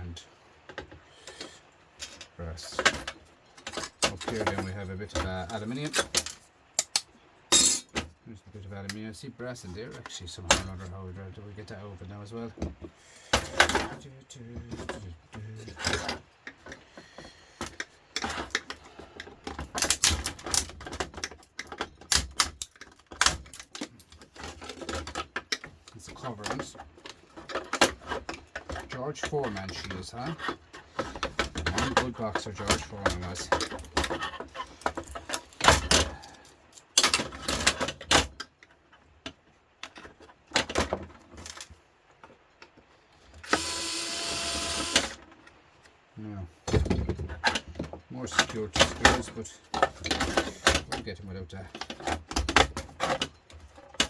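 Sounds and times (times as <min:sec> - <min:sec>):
plastic casing clattering and scraping: 0:12.6 - 0:38.6, 0:46.7 - 0:54.0.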